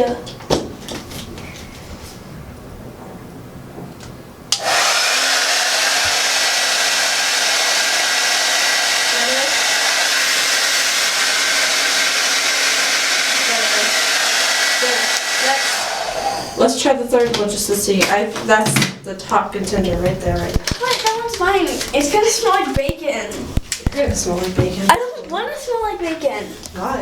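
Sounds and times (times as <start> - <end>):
hair dryer blowing: 4.5 - 16.8.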